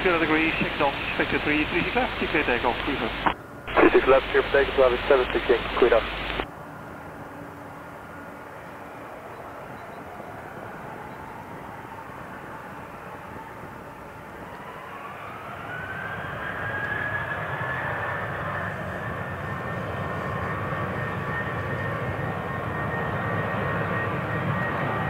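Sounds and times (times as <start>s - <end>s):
jet engines spooling up: 0.0s - 6.5s.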